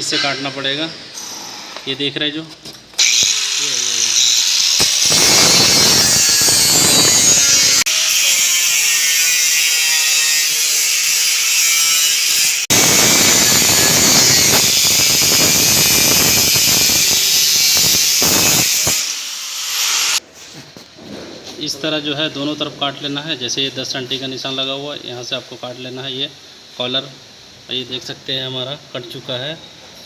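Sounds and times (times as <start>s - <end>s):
power tool cutting sheet metal: 3.0s - 20.2s.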